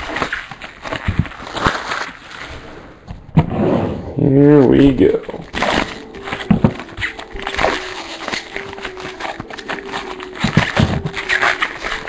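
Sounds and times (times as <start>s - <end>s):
foil pack crinkling and tearing: 0.0s - 2.6s, 5.2s - 12.0s
cards being handled: 4.7s - 12.0s.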